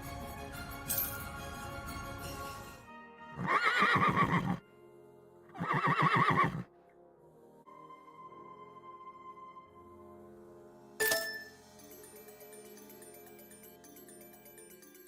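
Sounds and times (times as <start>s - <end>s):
music: 0.0s - 15.0s
horse whinnying: 3.4s - 4.6s, 5.5s - 6.7s.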